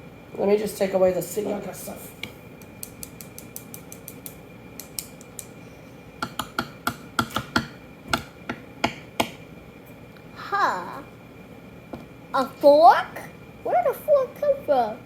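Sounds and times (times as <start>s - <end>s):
sharp clicks and taps: 2.2s - 5.5s.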